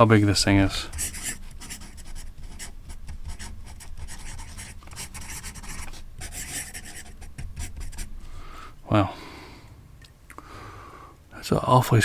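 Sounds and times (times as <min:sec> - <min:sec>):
marker scribbling on paper: 0:00.6 - 0:08.2.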